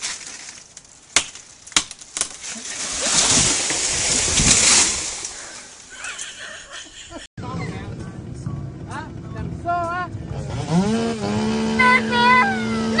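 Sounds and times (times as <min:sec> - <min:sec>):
wood cracking: 0:00.0 - 0:05.5
tree falling crash: 0:00.0 - 0:05.7.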